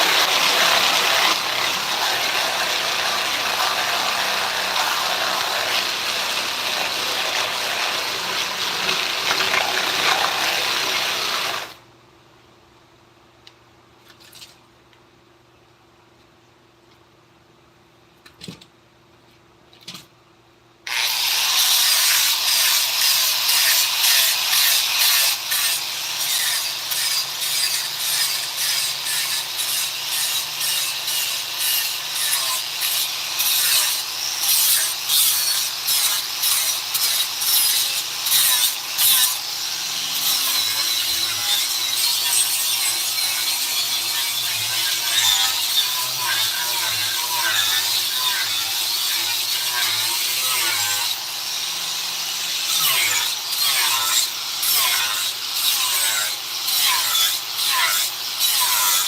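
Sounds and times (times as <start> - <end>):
tool scratching wood: 0.0 - 11.7.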